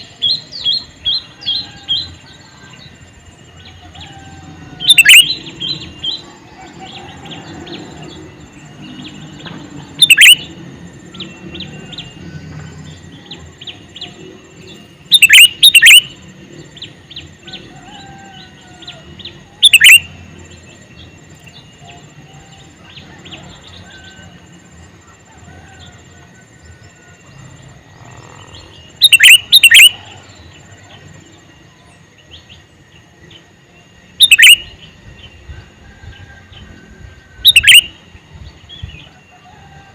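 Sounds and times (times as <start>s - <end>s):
faint bird chirping: 0.0s - 39.9s
bird sharp call notes: 4.8s - 5.5s, 10.0s - 10.5s, 15.1s - 16.2s, 19.6s - 20.1s, 29.0s - 30.2s, 34.2s - 34.8s, 37.4s - 38.0s.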